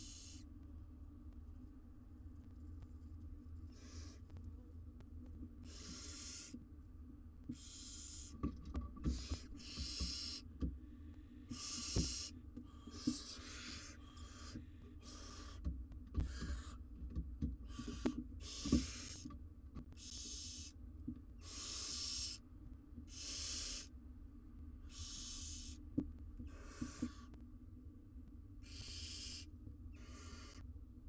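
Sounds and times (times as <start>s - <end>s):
owl chicks rasping calls: 0.0s - 0.5s, 3.7s - 4.3s, 5.6s - 6.6s, 7.5s - 10.6s, 11.5s - 17.0s, 17.6s - 20.8s, 21.4s - 23.9s, 24.8s - 25.8s, 26.4s - 27.4s, 28.6s - 30.7s
steady low hum: 0.0s - 31.0s.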